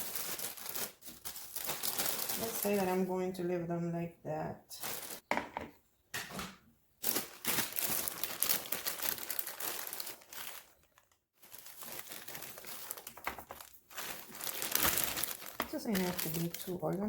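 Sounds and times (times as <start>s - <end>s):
plastic bag crinkling: 0.0s - 3.1s, 4.8s - 5.3s, 7.0s - 17.0s.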